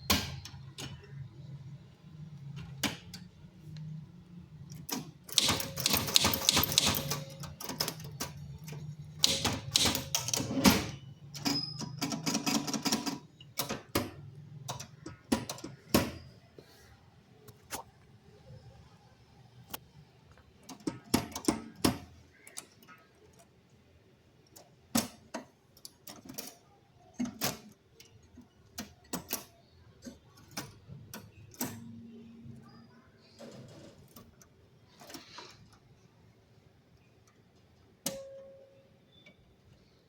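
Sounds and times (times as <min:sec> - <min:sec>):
typewriter keys clacking: 0:04.8 - 0:14.0.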